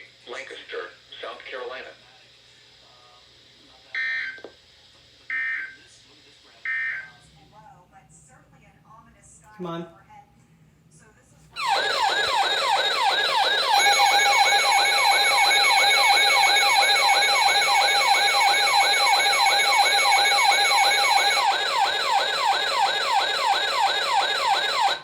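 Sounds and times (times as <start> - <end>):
electronic siren alarm: 11.6 - 25.0.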